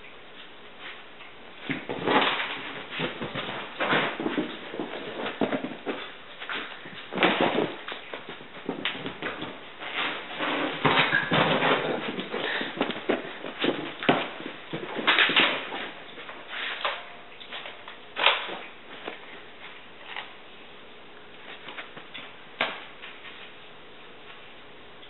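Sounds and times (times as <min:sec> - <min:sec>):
cat scuffling on floor: 0:01.6 - 0:16.9.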